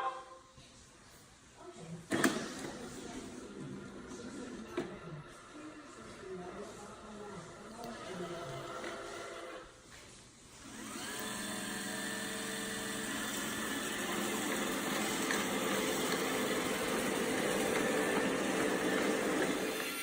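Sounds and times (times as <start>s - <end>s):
robot vacuum motor whirring: 10.6s - 20.0s.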